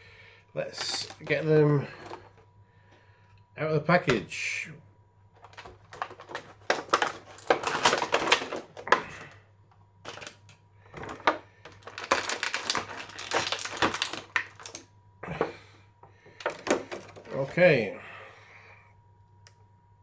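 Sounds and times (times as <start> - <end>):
plastic packaging crackling: 0.6 - 2.4, 5.4 - 9.4, 10.0 - 15.4, 16.3 - 17.7.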